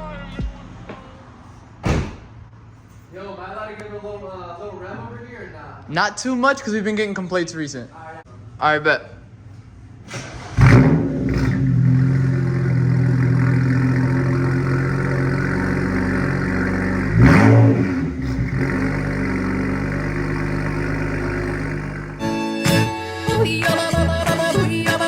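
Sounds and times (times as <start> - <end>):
car engine starting and idling: 9.7 - 22.3
engine revving: 10.2 - 22.3.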